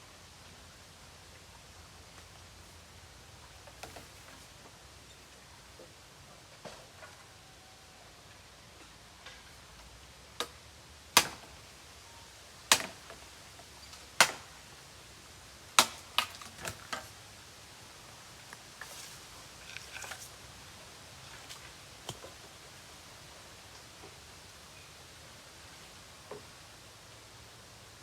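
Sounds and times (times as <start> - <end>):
faint rustle: 16.4 - 22.9.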